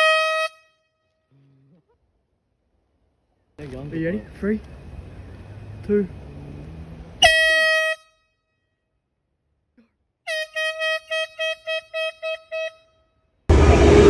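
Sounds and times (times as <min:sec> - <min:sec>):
air horn blasts: 0:00.0 - 0:01.0, 0:07.2 - 0:08.4, 0:10.3 - 0:13.1
loud rushing noise: 0:13.5 - 0:14.0.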